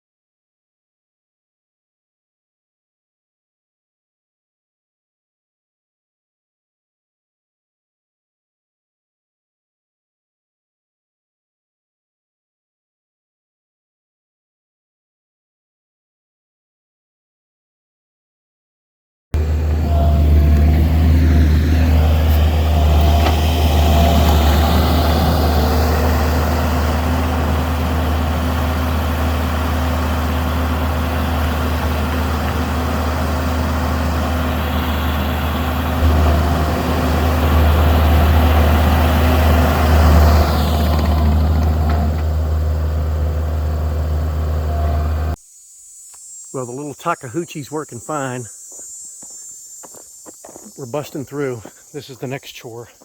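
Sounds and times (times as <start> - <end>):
diesel engine rumbling: 19.4 - 45.4.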